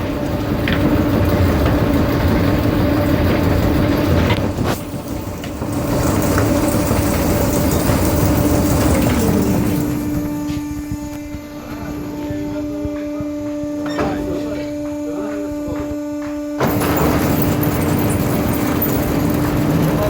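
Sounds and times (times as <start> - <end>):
baling machine running: 0.0 - 20.0
steady hum: 0.0 - 20.0.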